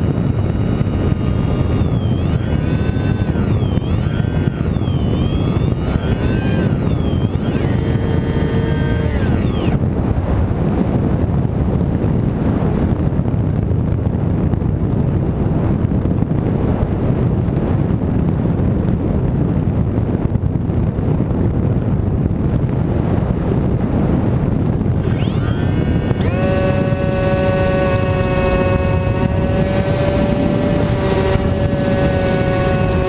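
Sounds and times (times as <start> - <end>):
model plane motor whine: 0.0 - 9.8, 24.9 - 33.0
wind rushing over microphone: 0.0 - 33.0.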